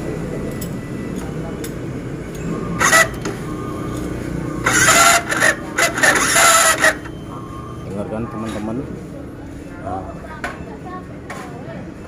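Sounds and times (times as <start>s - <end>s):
starter motor cranking: 2.8s - 7.2s.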